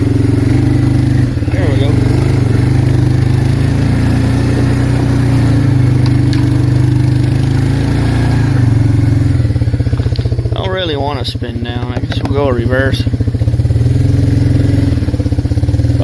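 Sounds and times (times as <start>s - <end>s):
atv engine running: 0.0s - 16.0s.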